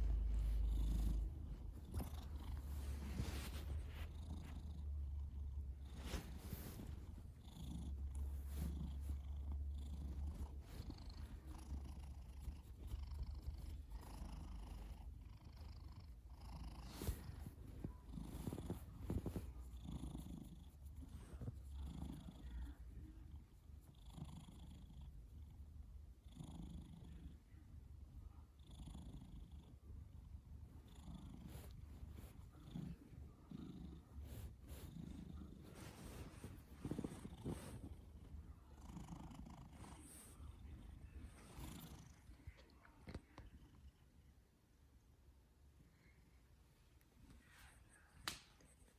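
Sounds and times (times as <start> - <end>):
cat snoring: 0.0 - 22.8, 28.6 - 29.7, 30.8 - 42.4.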